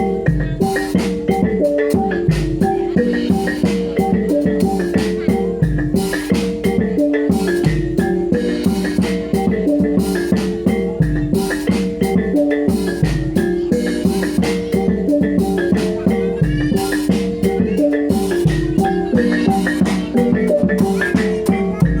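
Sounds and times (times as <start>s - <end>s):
deep bass beat: 9.4s - 22.0s.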